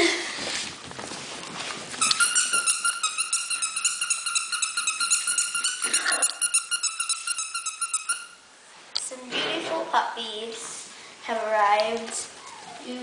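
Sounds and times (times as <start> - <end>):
squeaky dog toy squeaking: 2.0 - 8.4.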